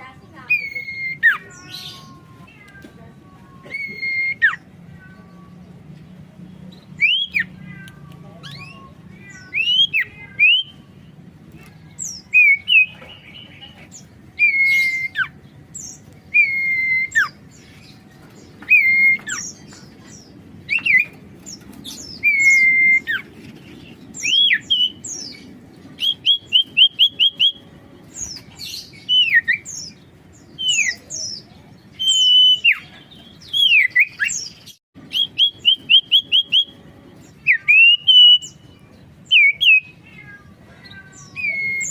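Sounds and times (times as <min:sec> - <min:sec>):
bird singing whistled notes: 0:00.5 - 0:02.1, 0:06.8 - 0:07.6, 0:08.4 - 0:10.8, 0:14.4 - 0:17.6, 0:18.6 - 0:19.6, 0:21.9 - 0:23.3, 0:24.1 - 0:25.4, 0:26.0 - 0:30.0, 0:30.6 - 0:40.0.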